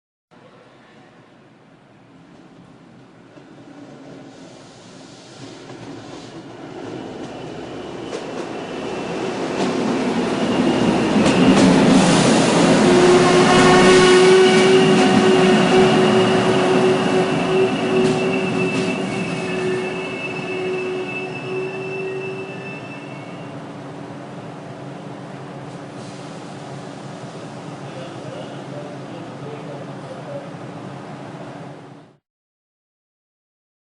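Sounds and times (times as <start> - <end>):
train rumbling past: 0.5 - 32.2
wheels squealing on rails: 4.2 - 23.6.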